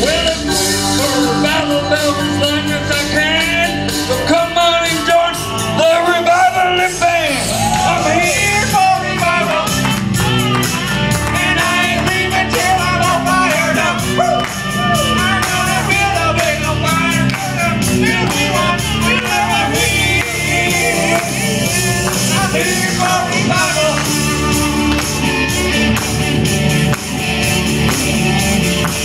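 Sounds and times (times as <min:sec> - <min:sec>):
band playing: 0:00.0 - 0:29.0
bass notes: 0:00.0 - 0:29.0
voices singing: 0:00.0 - 0:29.0
percussion beat: 0:07.5 - 0:29.0.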